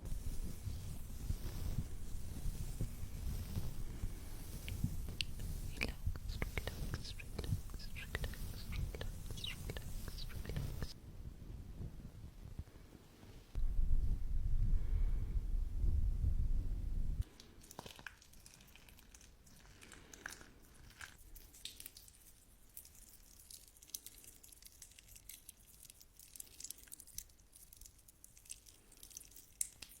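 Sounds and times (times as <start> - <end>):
loud low rumble: 13.6 - 17.2
slime squishing and crackling: 17.6 - 30.0.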